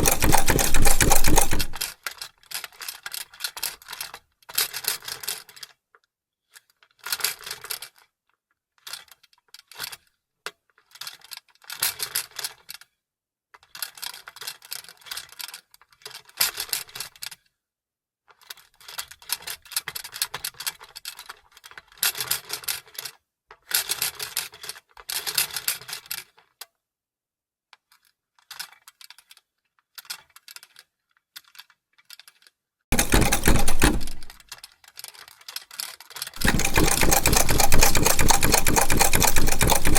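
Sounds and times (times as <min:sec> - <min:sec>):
sewing machine stitching: 0:00.0 - 0:01.9, 0:32.9 - 0:34.4, 0:36.4 - 0:39.9.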